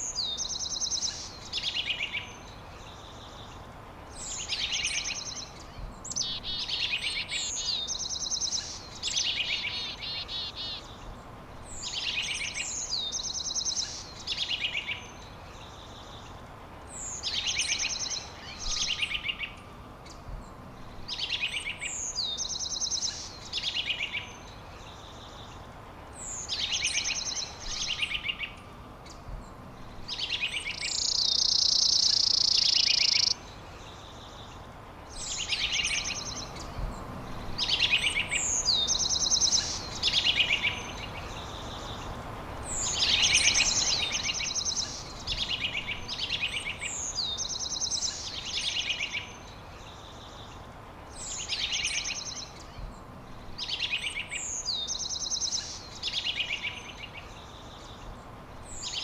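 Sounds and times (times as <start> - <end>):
low outdoor hiss: 0.0 - 59.0
songbird singing: 0.0 - 59.0
dense bird trill: 30.8 - 33.4.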